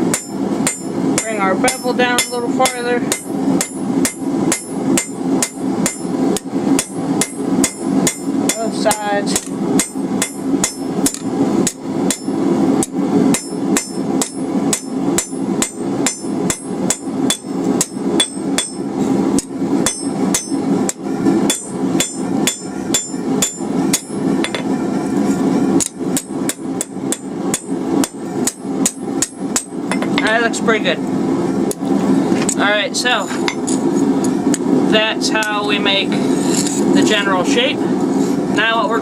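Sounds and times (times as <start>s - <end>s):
hammer striking steel on anvil: 0.0s - 24.8s, 25.8s - 30.3s.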